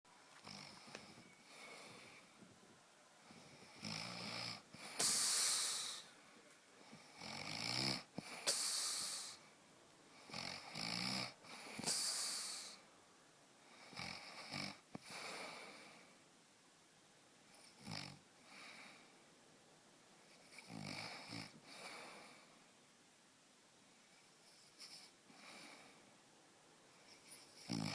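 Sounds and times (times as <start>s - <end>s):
low buzzing snore: 0.4s - 2.3s, 3.2s - 6.2s, 6.8s - 9.5s, 10.2s - 12.9s, 27.3s - 27.9s
hissing breath: 4.7s - 6.2s, 8.2s - 9.6s, 11.5s - 12.9s.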